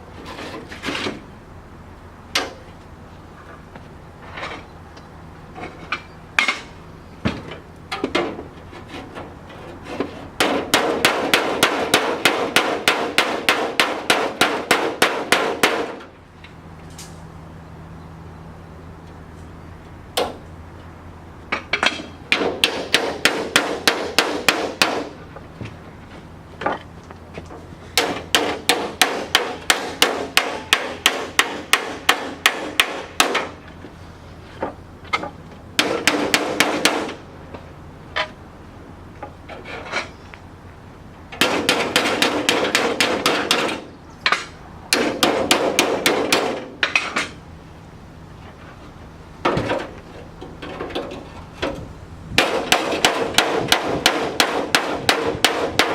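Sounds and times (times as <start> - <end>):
hammer striking sheet metal: 10.4 - 16.0, 21.9 - 25.2, 41.4 - 47.1, 52.4 - 55.9.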